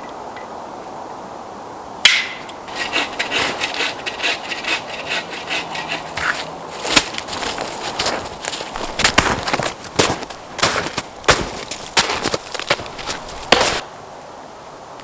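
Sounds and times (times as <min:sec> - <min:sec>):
hand saw cutting wood: 0:02.6 - 0:13.8.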